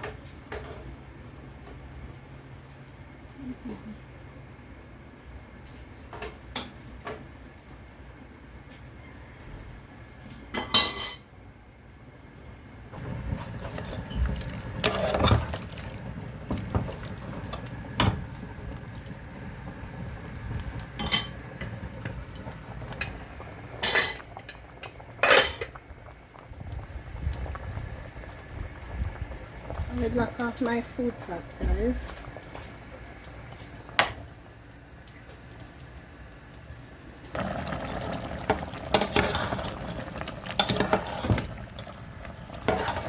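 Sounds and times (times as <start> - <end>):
pots and metal utensils clinking: 10.5 - 11.2, 13.2 - 16.0, 20.8 - 22.2, 22.8 - 25.8, 38.5 - 39.8, 40.4 - 41.9, 42.6 - 43.0.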